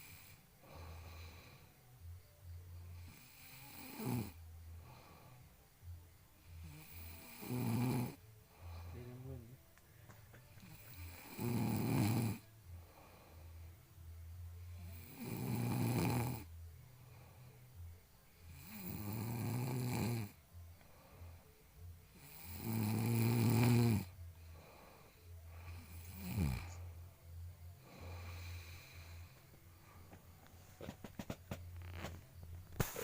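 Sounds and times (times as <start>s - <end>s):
person snoring: 2.9s - 5.4s, 6.5s - 9.4s, 10.6s - 13.5s, 14.7s - 16.5s, 18.5s - 20.4s, 22.1s - 27.0s, 27.8s - 30.2s.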